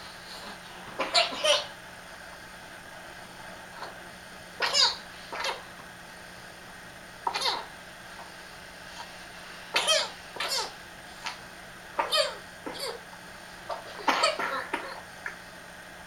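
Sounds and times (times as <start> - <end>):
person coughing: 14.0 - 15.0.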